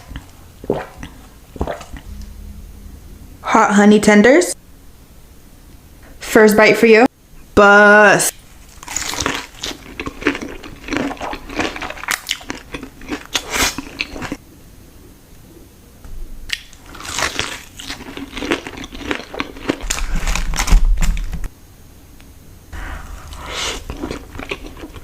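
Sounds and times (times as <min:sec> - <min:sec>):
low rumble: 0:01.9 - 0:06.1
crunchy food being chewed: 0:08.4 - 0:14.4, 0:16.5 - 0:21.2, 0:22.8 - 0:25.0.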